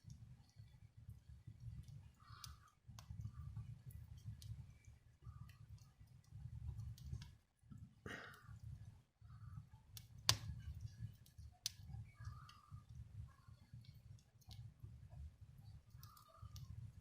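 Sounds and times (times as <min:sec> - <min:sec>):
faint fire crackles: 0:00.0 - 0:17.0
low rumble of flames: 0:00.0 - 0:17.0
sharp wood pops: 0:10.3 - 0:10.6.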